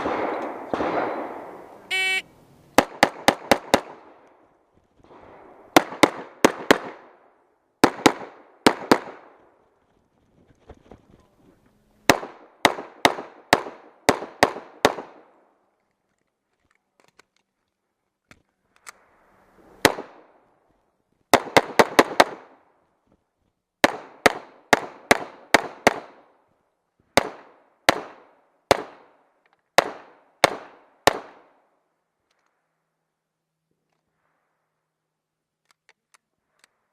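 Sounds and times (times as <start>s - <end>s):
rapid pistol shots with echo: 0.0s - 1.7s, 5.1s - 7.2s, 12.1s - 15.2s, 23.8s - 26.2s.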